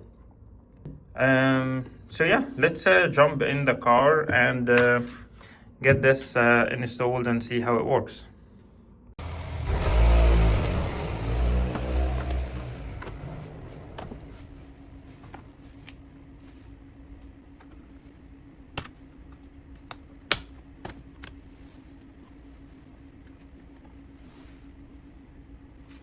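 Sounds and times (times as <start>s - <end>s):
steady low hum: 0.0s - 26.0s
plastic snap: 19.8s - 21.4s.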